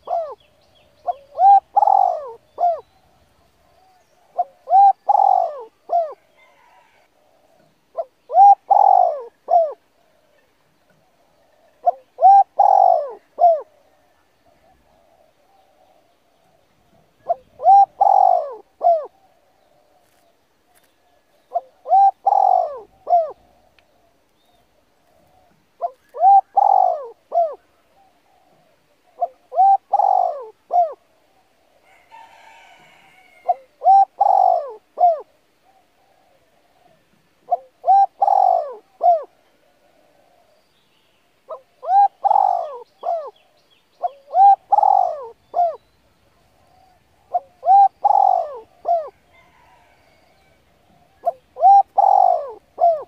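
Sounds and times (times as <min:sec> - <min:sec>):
bird calling arched notes: 0:00.0 - 0:03.3, 0:03.9 - 0:06.2, 0:07.9 - 0:09.8, 0:11.8 - 0:13.8, 0:21.5 - 0:31.5, 0:33.2 - 0:39.7, 0:41.5 - 0:49.5, 0:50.3 - 0:53.0.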